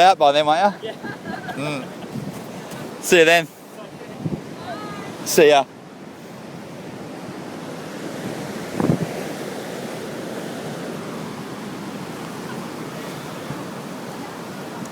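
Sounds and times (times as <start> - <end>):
surf breaking on shore: 0.0 - 14.9
wind on microphone: 1.0 - 3.0, 4.0 - 5.1, 6.8 - 14.9.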